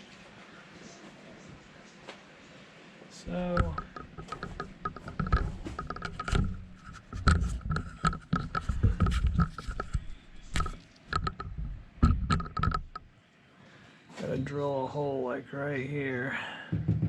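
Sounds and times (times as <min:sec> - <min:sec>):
clicks and knocks of tools: 0:03.5 - 0:13.1.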